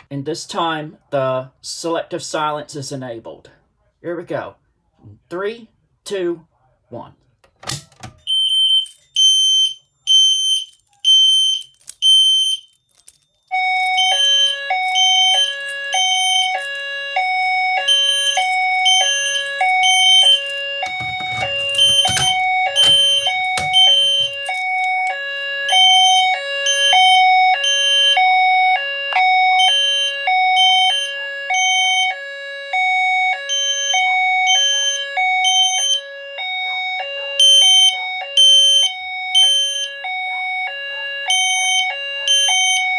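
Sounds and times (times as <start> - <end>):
high alarm beeps: 8.3 - 12.8, 13.5 - 42.9.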